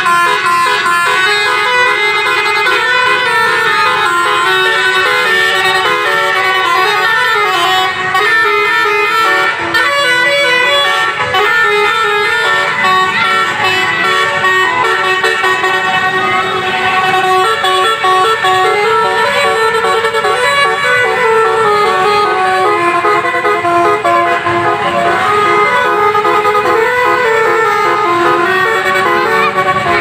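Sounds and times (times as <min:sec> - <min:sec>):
musical bus horn playing a tune: 0:00.0 - 0:30.0.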